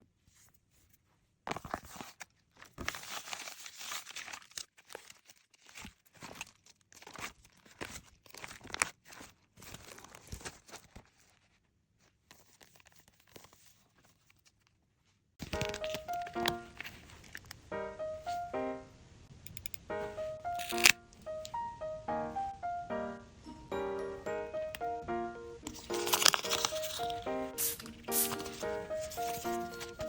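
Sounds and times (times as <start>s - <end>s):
paper crinkling: 1.5s - 18.4s, 20.1s - 21.5s, 25.6s - 30.0s.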